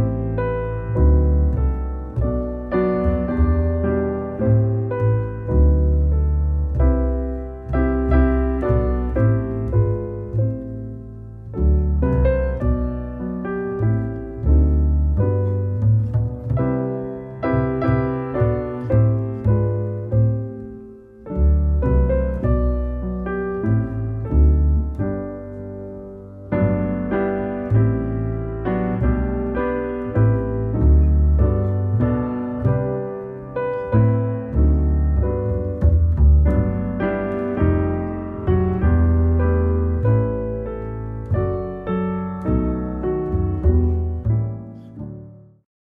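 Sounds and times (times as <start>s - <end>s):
piano music: 0.0s - 45.7s.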